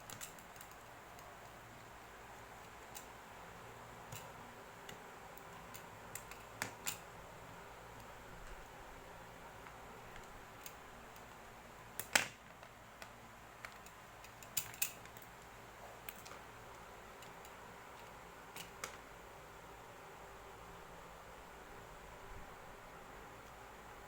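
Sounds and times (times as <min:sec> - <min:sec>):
steady low hiss: 0:00.0 - 0:24.0
light clicks and taps: 0:12.0 - 0:19.1.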